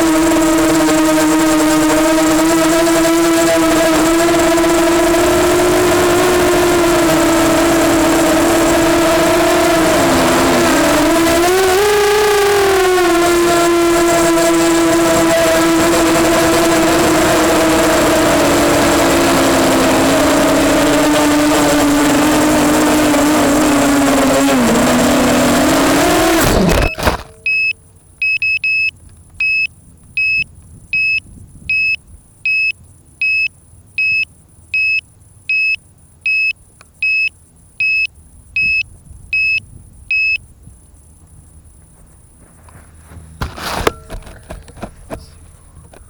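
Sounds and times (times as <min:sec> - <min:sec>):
drone motors whining: 0:00.0 - 0:31.0, 0:34.1 - 0:46.0
short high electronic beeps: 0:26.4 - 0:40.4.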